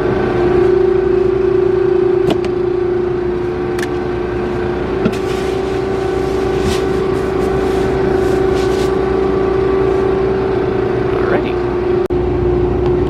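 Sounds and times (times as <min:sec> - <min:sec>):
combine harvester droning: 0:00.0 - 0:13.0.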